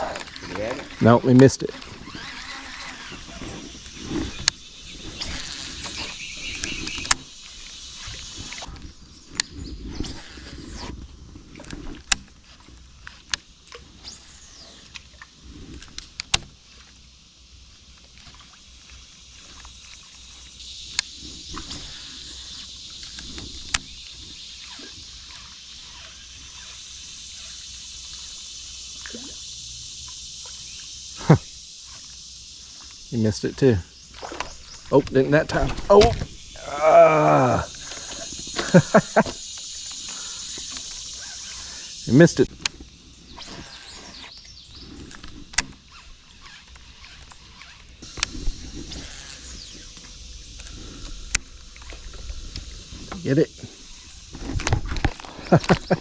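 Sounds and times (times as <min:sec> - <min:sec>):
high insect drone: 0:00.0 - 0:56.0
knocks and clicks of gear: 0:05.2 - 0:07.4, 0:15.8 - 0:16.6, 0:34.2 - 0:36.4, 0:44.3 - 0:45.9.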